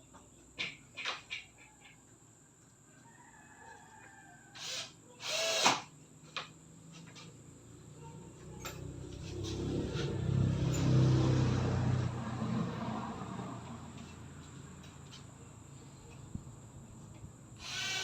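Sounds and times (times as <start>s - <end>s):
power drill running: 4.6s - 5.8s, 17.6s - 18.0s.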